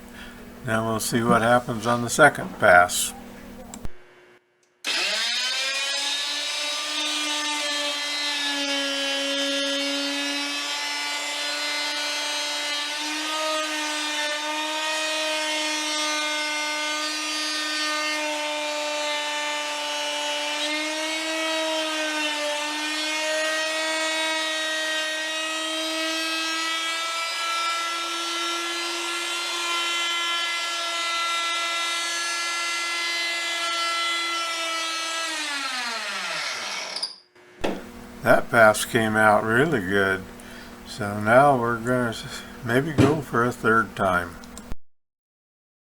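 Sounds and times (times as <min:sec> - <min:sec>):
wood router high whine: 0:04.8 - 0:37.1.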